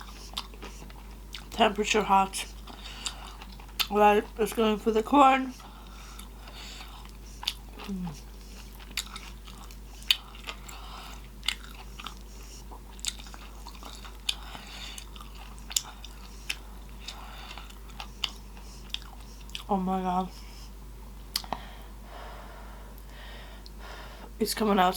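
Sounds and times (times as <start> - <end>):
person eating corn on the cob: 0.0 - 1.6, 2.4 - 3.9, 5.5 - 19.7.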